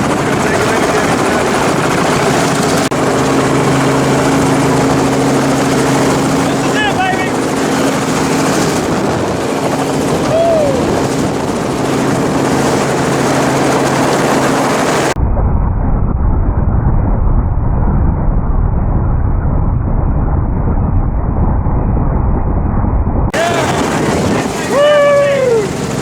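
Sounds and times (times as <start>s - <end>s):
helicopter rotor and engine: 0.0s - 15.2s, 21.6s - 26.0s.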